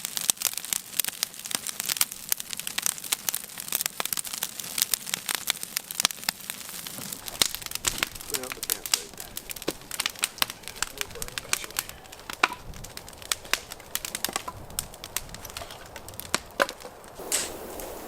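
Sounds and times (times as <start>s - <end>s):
campfire crackling and popping: 0.0s - 18.0s
steady hiss: 6.2s - 18.0s.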